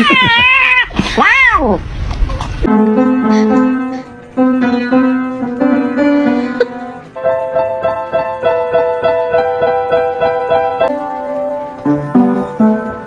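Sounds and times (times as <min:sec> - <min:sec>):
instrumental background music: 0:02.7 - 0:13.0.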